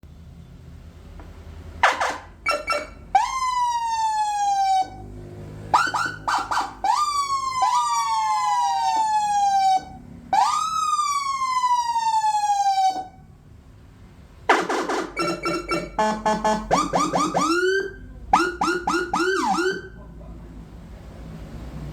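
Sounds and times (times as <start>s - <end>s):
electronic vehicle siren: 1.8s - 13.4s, 14.5s - 20.0s
siren chirps: 1.8s - 13.4s, 14.5s - 20.0s.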